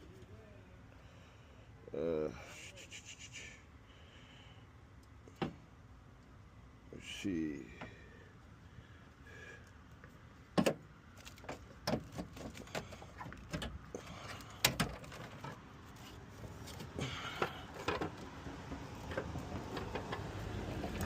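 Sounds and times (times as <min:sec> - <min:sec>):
car parts knocking and clattering: 0:10.5 - 0:15.6, 0:16.6 - 0:21.0.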